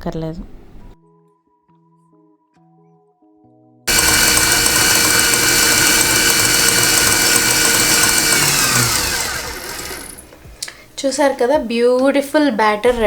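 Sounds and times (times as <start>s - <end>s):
stand mixer motor whine: 3.9s - 10.4s
whisk beating mixture: 3.9s - 10.4s.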